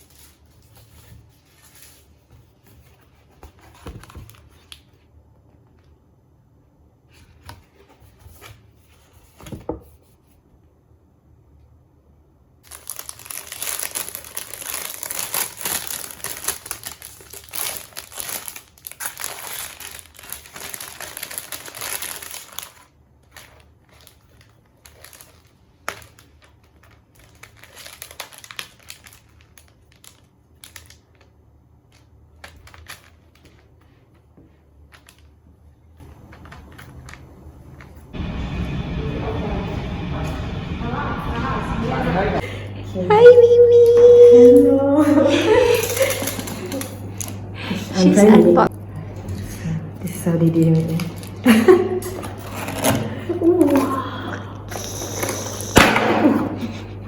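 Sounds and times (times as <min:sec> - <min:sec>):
packaging crinkling and rustling: 0:00.0 - 0:05.1, 0:12.6 - 0:38.1, 0:45.6 - 0:47.4, 0:50.6 - 0:54.0.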